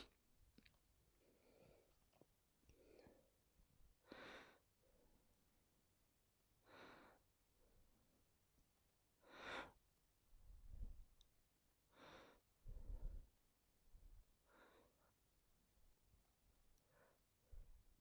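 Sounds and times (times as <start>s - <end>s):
soft breaths: 1.1s - 5.3s, 6.6s - 7.9s, 11.9s - 15.3s, 16.8s - 18.0s.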